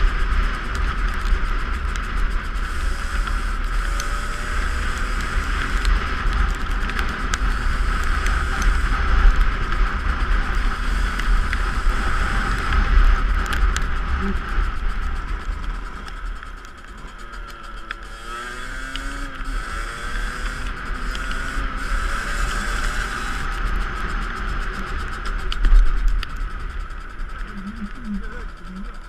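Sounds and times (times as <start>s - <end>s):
two-stroke dirt bike engine: 0.0s - 29.0s
small clicks and knocks: 0.4s - 10.0s, 15.0s - 27.4s.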